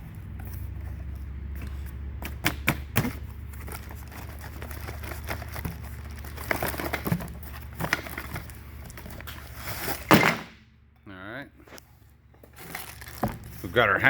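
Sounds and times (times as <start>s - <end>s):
packaging crinkling and tearing: 3.4s - 9.9s, 12.5s - 13.6s.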